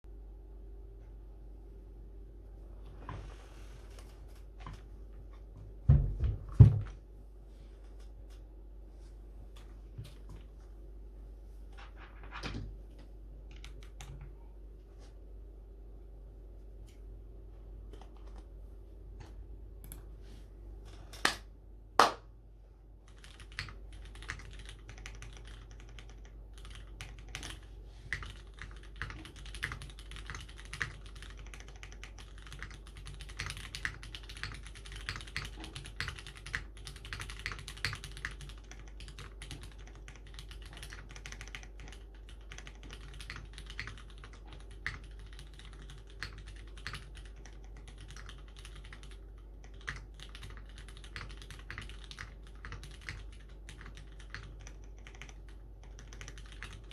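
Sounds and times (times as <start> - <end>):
mechanical keyboard typing: 13.5 - 14.2, 17.9 - 18.5, 23.1 - 56.9.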